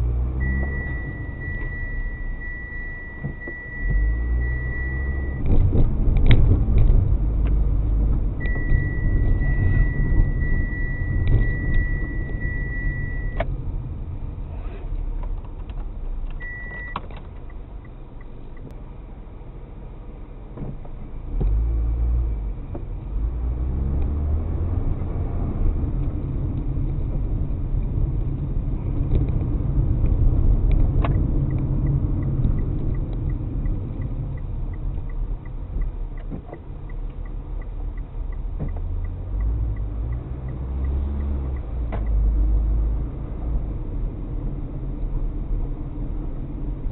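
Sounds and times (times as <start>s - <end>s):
car road and engine rumble: 0.0s - 46.9s
short high beep: 0.4s - 5.4s, 8.4s - 13.4s.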